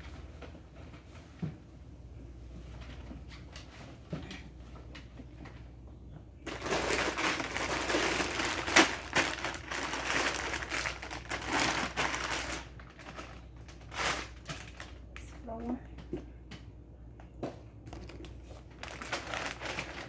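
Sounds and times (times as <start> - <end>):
food packaging crinkling: 6.5 - 15.2, 17.9 - 20.0.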